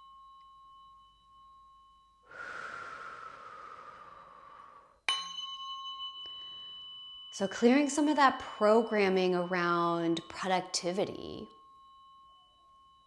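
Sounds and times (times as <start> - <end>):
tuning fork struck: 0.0 - 2.7, 4.0 - 13.0
tuning fork ringing: 0.0 - 13.0
breathy exhale: 2.3 - 5.0.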